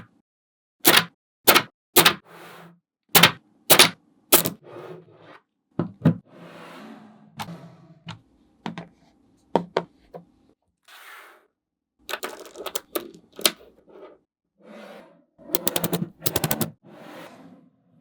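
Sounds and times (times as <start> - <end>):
balls scraping and rolling: 4.4 - 5.5, 6.2 - 9.2, 12.1 - 18.0
magnetic balls clicking together: 12.1 - 13.6, 15.6 - 16.7.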